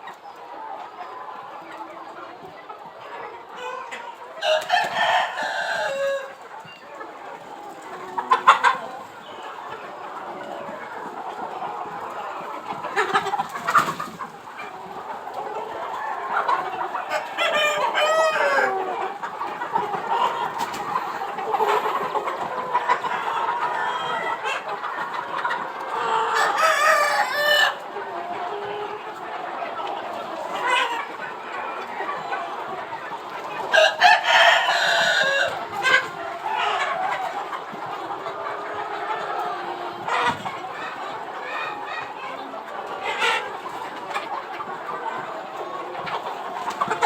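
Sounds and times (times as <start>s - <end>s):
chickens clucking: 0.0s - 47.0s
rooster crowing: 4.4s - 6.3s.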